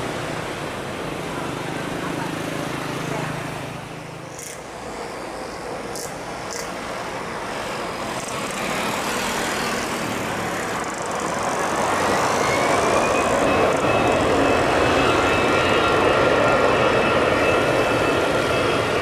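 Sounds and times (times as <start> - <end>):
jet engines roaring: 0.0 - 19.0
rising whine: 9.6 - 19.0.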